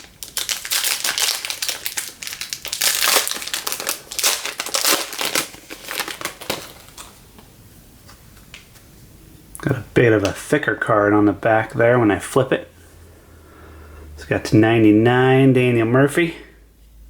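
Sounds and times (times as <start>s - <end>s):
wrapper crinkling: 0.0s - 7.3s.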